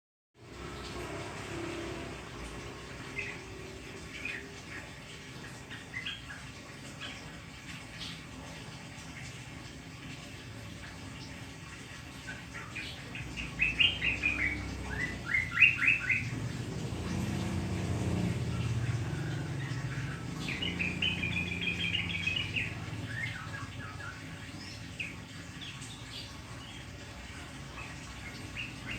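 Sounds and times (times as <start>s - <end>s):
songbird chirping: 10.8s - 28.9s.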